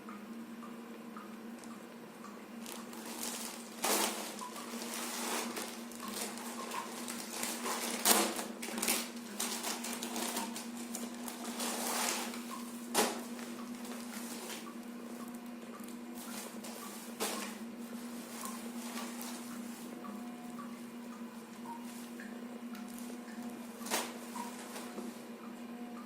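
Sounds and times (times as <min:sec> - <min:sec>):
steady low hum: 0:00.0 - 0:26.0
packaging rustling: 0:02.6 - 0:14.8, 0:16.2 - 0:20.0, 0:23.8 - 0:25.1.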